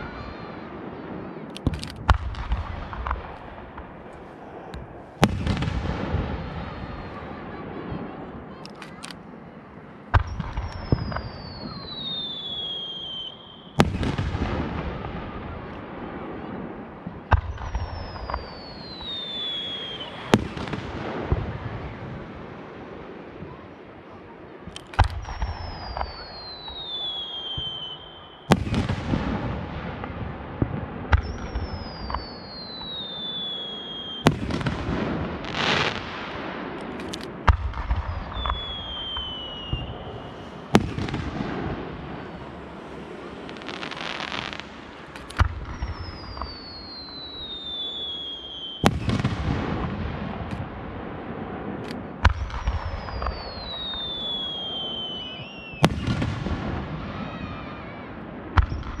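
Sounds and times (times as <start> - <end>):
fireworks bursting with booms: 0.0 - 59.0
falling whistle of rising shell: 38.0 - 40.4, 45.6 - 49.1, 52.6 - 56.1.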